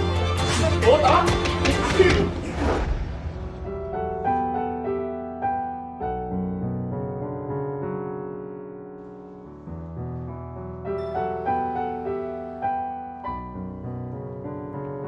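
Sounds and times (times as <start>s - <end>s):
slow piano music: 3.6s - 15.0s.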